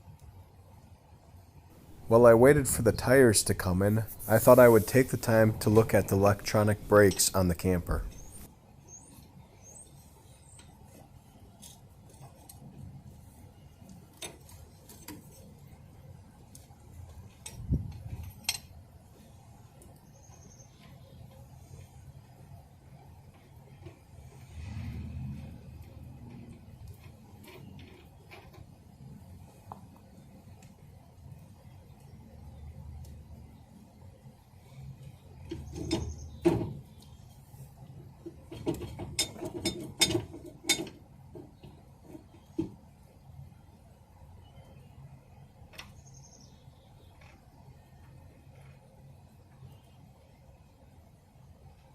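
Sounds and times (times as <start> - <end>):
tools and parts clicking and knocking: 17.3 - 18.8, 35.4 - 36.8, 38.2 - 42.8
low steady rumble: 21.2 - 27.5.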